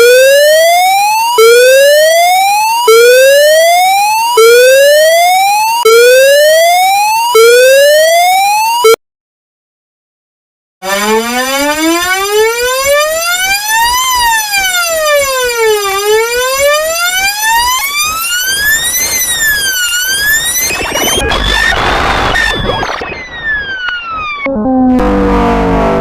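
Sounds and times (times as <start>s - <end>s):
wailing alarm siren: 0.0s - 9.0s, 10.8s - 26.0s.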